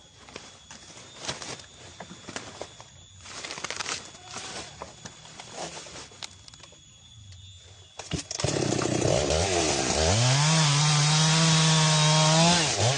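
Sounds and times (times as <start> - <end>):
chainsaw starting and revving: 8.1 - 12.9.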